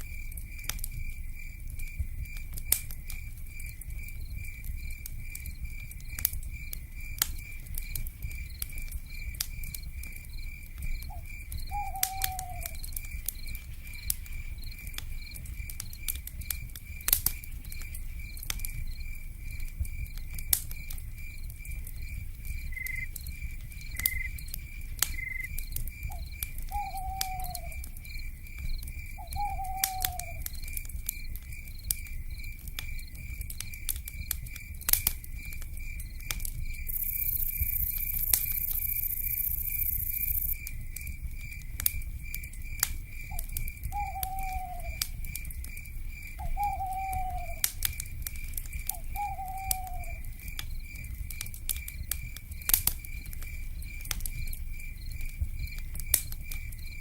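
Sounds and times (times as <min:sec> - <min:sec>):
pulsing insect chirp: 0:00.0 - 0:57.0
wood fire crackling and popping: 0:00.0 - 0:57.0
owl calls: 0:11.1 - 0:12.8, 0:26.7 - 0:27.8, 0:29.2 - 0:30.4, 0:43.3 - 0:45.0, 0:46.4 - 0:47.6, 0:48.9 - 0:50.3.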